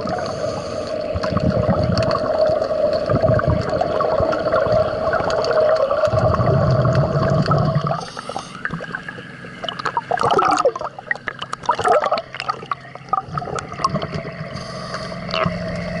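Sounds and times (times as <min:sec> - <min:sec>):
bubbling exhaust bubbles: 0:00.0 - 0:16.0
diver breathing through regulator: 0:00.1 - 0:01.1, 0:07.2 - 0:08.7, 0:14.4 - 0:15.7.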